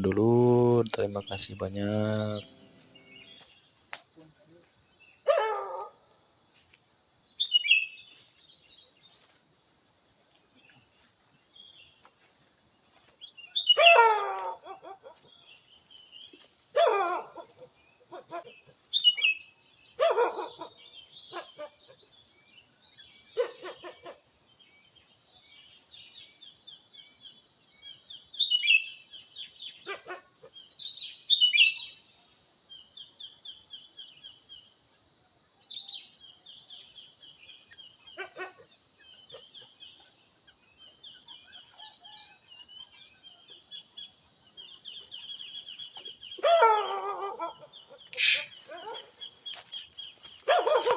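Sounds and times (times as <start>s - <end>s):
birds chirping: 0.0s - 3.5s, 44.6s - 50.9s.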